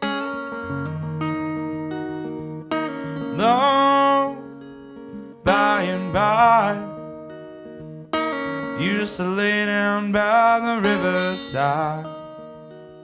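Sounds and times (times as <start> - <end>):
acoustic guitar playing: 0.0 - 13.0
wordless voice singing: 3.3 - 4.6, 5.4 - 7.1, 8.6 - 12.4.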